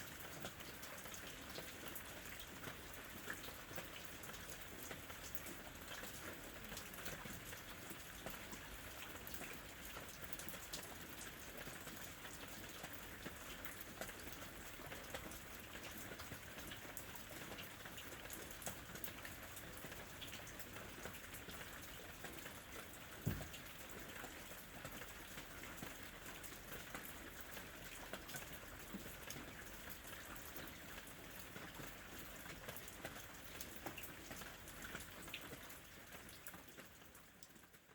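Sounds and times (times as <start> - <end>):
rain pattering on a surface: 0.0 - 37.9
low thump: 23.3 - 23.7.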